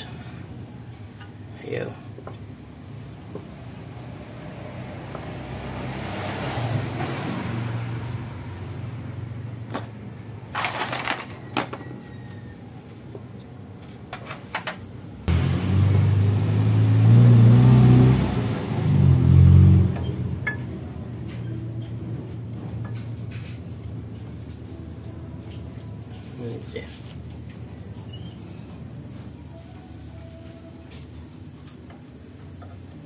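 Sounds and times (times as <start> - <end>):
low motor-like hum: 19.2 - 26.4.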